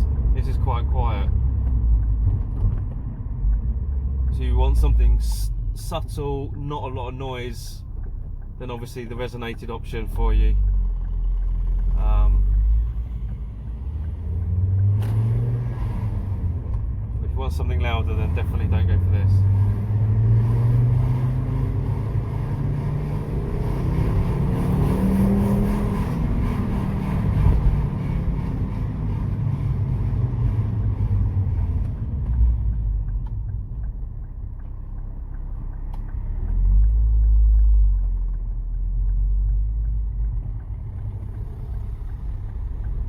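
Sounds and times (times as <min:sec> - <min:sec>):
car engine revving: 0:00.0 - 0:43.0.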